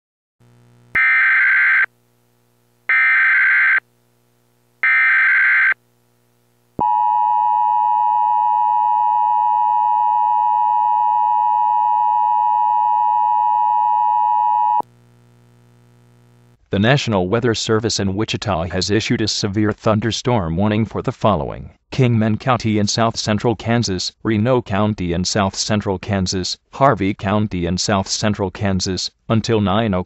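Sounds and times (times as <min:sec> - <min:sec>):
high warning alarm tone: 0:01.0 - 0:01.9, 0:02.9 - 0:03.8, 0:04.8 - 0:05.8, 0:06.8 - 0:14.8.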